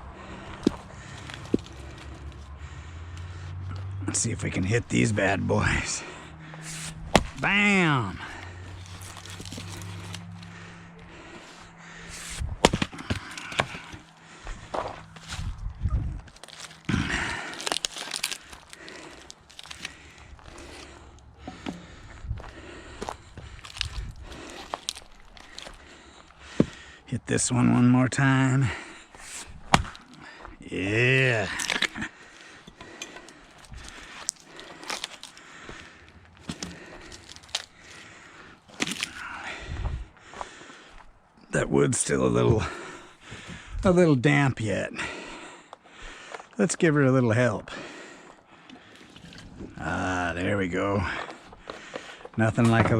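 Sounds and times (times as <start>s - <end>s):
firewood knocking and crunching: 0.0s - 41.2s, 47.8s - 52.9s
low steady hum: 0.0s - 43.7s
axe striking wood: 6.6s - 7.5s, 12.1s - 14.1s, 29.3s - 30.1s.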